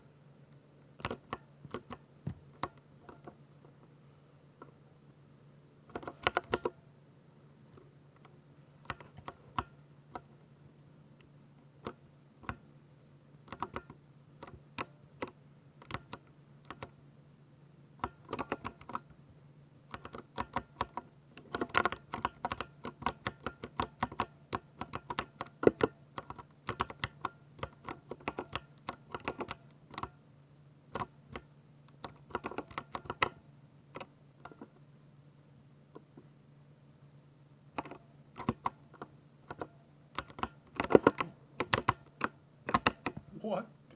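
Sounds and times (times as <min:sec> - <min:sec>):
mechanical keyboard typing: 0:13.5 - 0:17.0, 0:18.0 - 0:19.0, 0:19.9 - 0:30.2, 0:30.9 - 0:33.4, 0:39.4 - 0:43.2.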